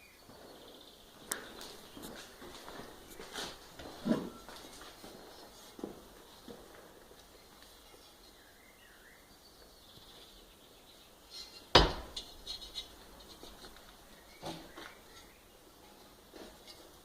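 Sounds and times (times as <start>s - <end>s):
sharp knock: 11.7s - 12.2s.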